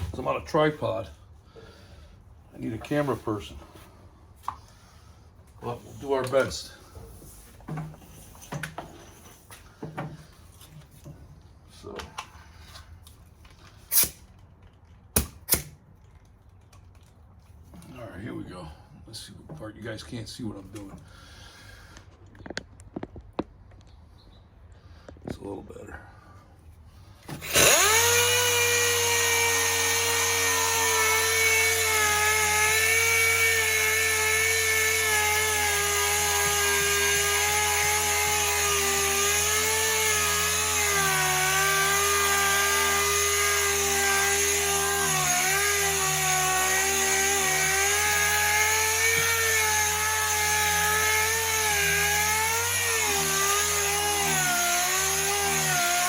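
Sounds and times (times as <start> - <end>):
power sander on metal panel: 27.3 - 56.0.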